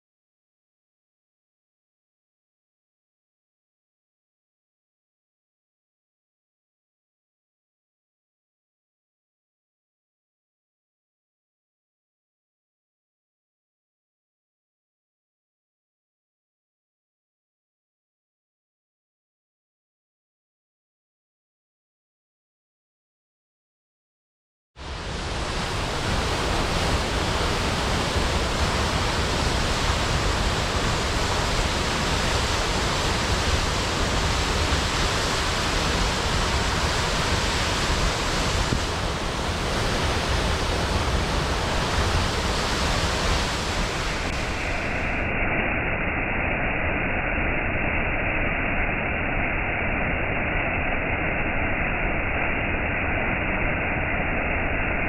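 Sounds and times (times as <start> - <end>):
waterfall rushing: 24.8 - 45.3.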